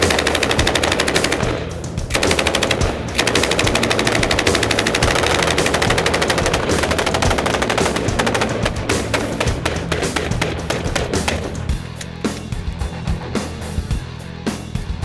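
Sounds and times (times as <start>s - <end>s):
rapid automatic gunfire: 0.0s - 12.0s.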